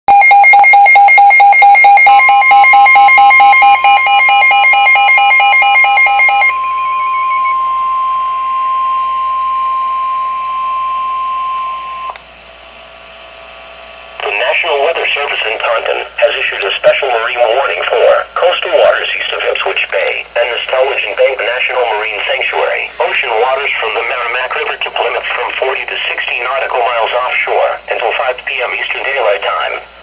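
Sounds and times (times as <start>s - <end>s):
rapid pulsing electronic beep: 0.1s - 12.1s
steady high alarm tone: 0.1s - 29.9s
faint radio hiss: 14.2s - 29.9s.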